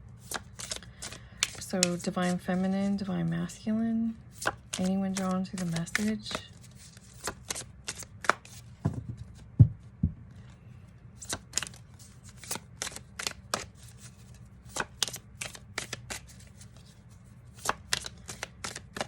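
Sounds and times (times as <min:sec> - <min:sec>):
cards being shuffled: 0:00.2 - 0:03.0, 0:04.3 - 0:10.5, 0:11.2 - 0:19.0
low thumps: 0:08.8 - 0:10.3.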